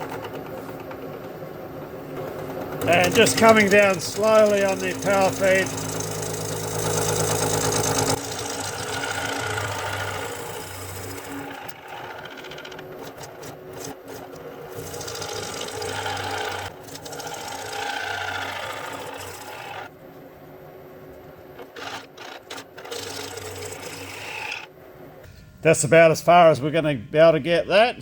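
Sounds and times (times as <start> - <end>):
machine running: 2.0 - 19.9
machine tool cutting metal: 2.8 - 19.9.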